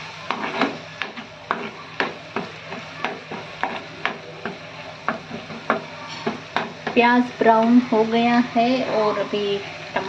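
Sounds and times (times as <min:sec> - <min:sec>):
onion sizzling in oil: 0:00.0 - 0:10.0
spoon scraping a pan: 0:00.2 - 0:07.0.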